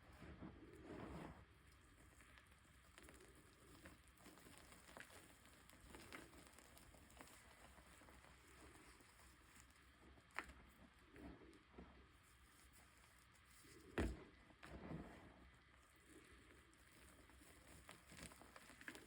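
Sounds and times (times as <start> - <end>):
chalk crumbling and clicking: 1.2 - 11.6, 15.8 - 19.0.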